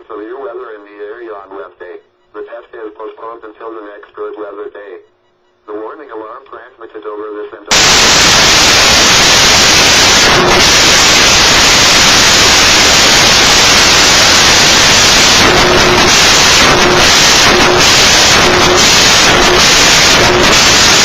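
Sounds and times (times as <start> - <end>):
loud radio static hiss: 5.7 - 21.0.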